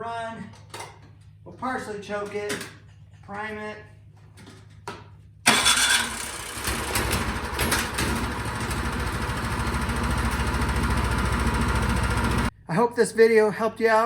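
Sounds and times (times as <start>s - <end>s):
small gas engine running: 5.5s - 12.5s.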